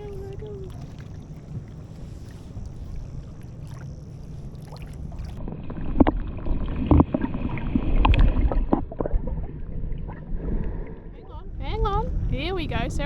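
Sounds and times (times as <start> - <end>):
wind buffeting microphone: 11.1 - 13.0.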